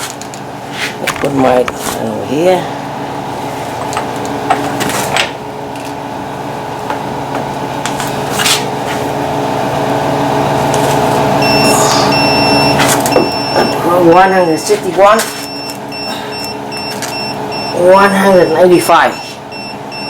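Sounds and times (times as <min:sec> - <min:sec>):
mechanical hum: 0:00.0 - 0:20.0
high electronic beeps: 0:11.4 - 0:14.8.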